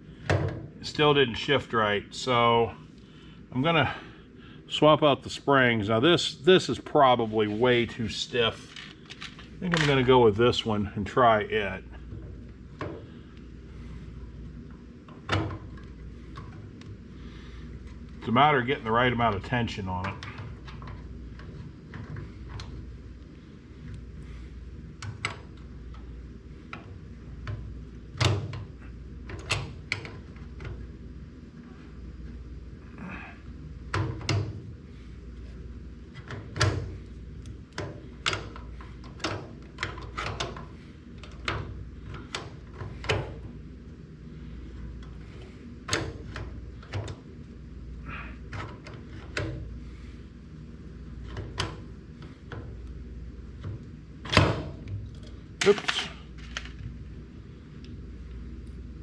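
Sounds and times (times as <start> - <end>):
low steady hum: 0.0 - 59.0
mechanism clicks and knocks: 8.7 - 10.2, 15.0 - 16.9, 24.9 - 26.1, 26.7 - 30.9, 33.9 - 34.7, 36.1 - 43.6, 44.9 - 47.4, 48.5 - 49.7, 51.2 - 57.0.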